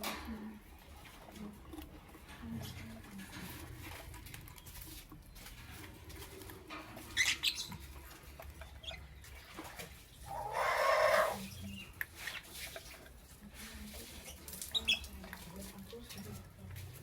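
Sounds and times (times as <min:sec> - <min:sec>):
lovebird harsh call: 0:10.3 - 0:11.4.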